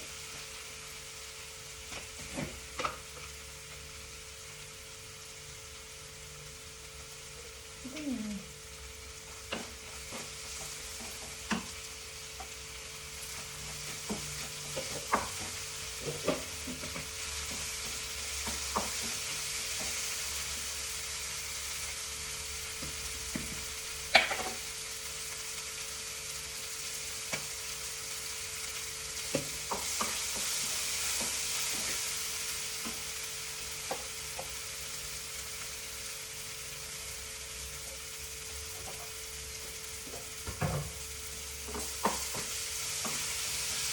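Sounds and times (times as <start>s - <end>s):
food sizzling in a frying pan: 0.0s - 43.9s.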